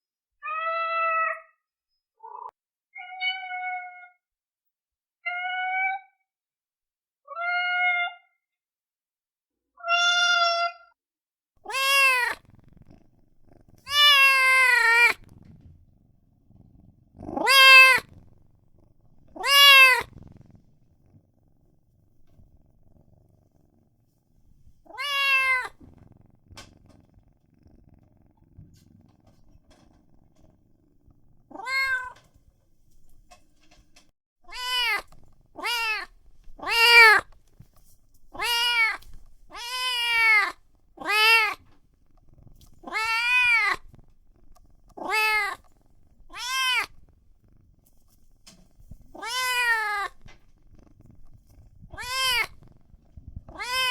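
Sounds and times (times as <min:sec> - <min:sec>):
newborn kitten mewing: 0:11.6 - 0:12.5, 0:13.8 - 0:15.3, 0:17.2 - 0:18.2, 0:19.3 - 0:20.1, 0:24.9 - 0:25.8, 0:31.5 - 0:32.2, 0:34.5 - 0:37.3, 0:38.4 - 0:41.6, 0:42.8 - 0:43.9, 0:45.0 - 0:45.6, 0:46.3 - 0:47.0, 0:49.1 - 0:50.3, 0:51.9 - 0:52.6, 0:53.4 - 0:53.9.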